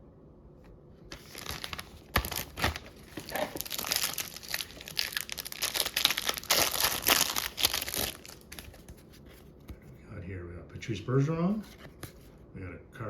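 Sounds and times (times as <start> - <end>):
wrapper crinkling and tearing: 1.1 - 9.0.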